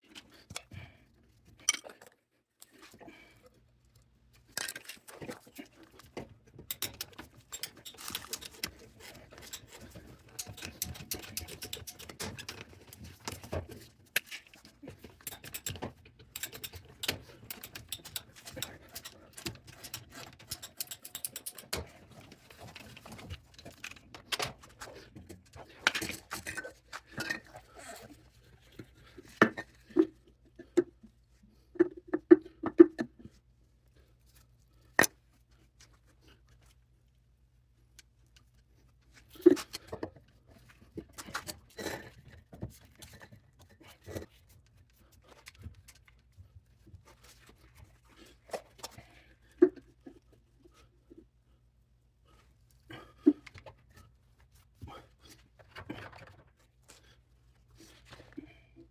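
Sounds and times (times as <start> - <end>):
tools clicking and knocking: 1.6 - 2.2, 4.5 - 31.2, 35.0 - 35.2, 39.2 - 46.4.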